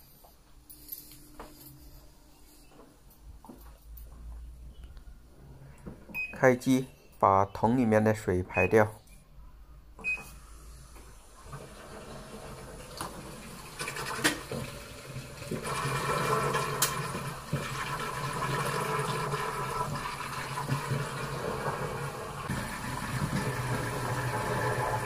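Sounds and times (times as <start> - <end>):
washing machine pump hum: 10.0 - 25.0.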